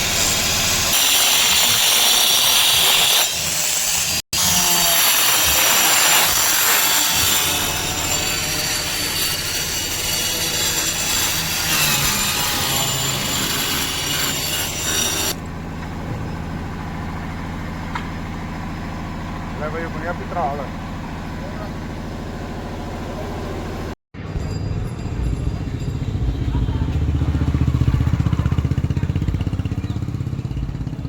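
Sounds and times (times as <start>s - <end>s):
harsh machine grinding: 0.0s - 18.4s
engine humming: 15.4s - 31.0s.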